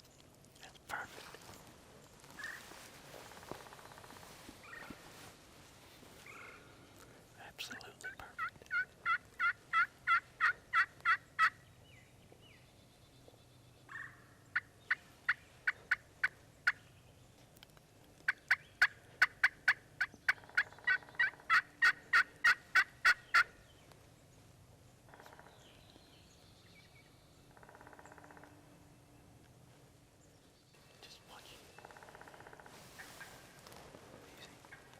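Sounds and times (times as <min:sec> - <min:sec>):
raspy turkey calls: 0:07.7 - 0:11.6, 0:13.9 - 0:16.8, 0:18.2 - 0:23.6, 0:31.4 - 0:34.9
turkey yelping: 0:08.4 - 0:11.6, 0:18.3 - 0:23.5.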